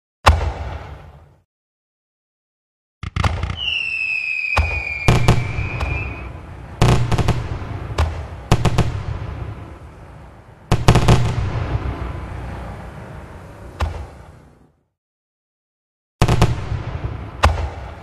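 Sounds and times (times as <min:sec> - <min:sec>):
firework bangs with rumble: 0:00.2 - 0:01.2, 0:03.0 - 0:09.6, 0:16.2 - 0:18.0
firework whistle: 0:03.2 - 0:06.4.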